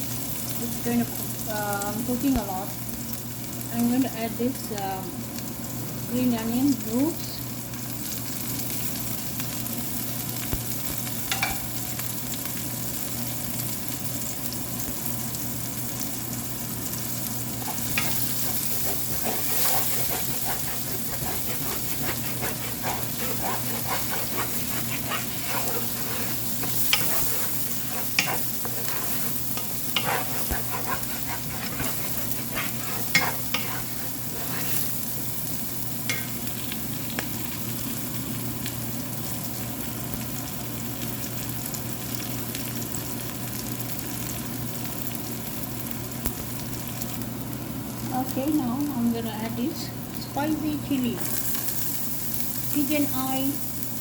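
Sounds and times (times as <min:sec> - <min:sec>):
garlic sizzling in hot oil: 0:00.0 - 0:54.0
spatula scraping and tapping pan: 0:11.3 - 0:11.6, 0:17.6 - 0:34.9, 0:36.1 - 0:36.5.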